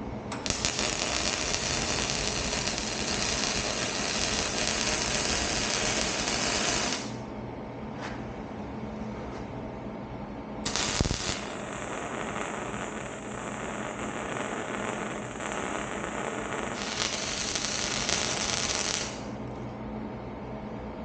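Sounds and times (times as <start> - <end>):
welding arc crackling: 0.3 - 7.2, 10.6 - 19.4.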